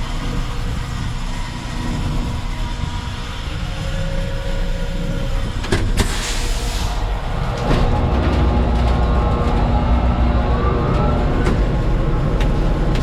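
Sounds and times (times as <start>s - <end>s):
diesel engine rumbling: 0.0s - 13.0s.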